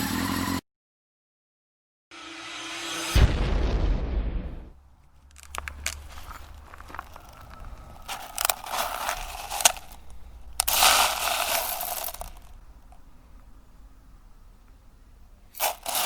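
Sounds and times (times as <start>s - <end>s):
plastic bbs pouring and rattling: 5.2s - 13.0s, 15.5s - 16.0s.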